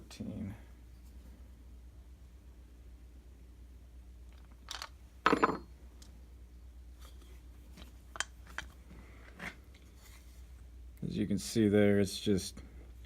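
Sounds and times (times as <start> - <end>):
metal parts clattering: 4.6 - 5.6.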